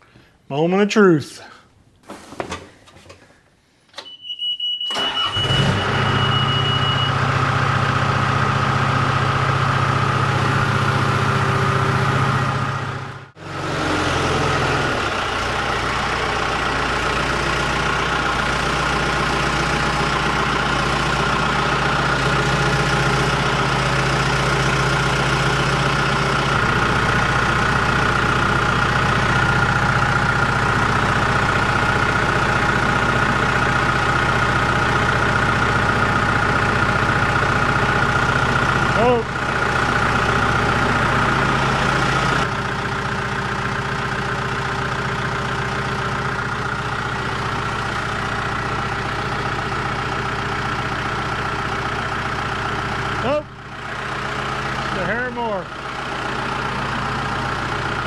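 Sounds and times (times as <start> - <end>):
tractor engine starting and running: 3.8 - 58.0
high warning beep: 4.0 - 7.2.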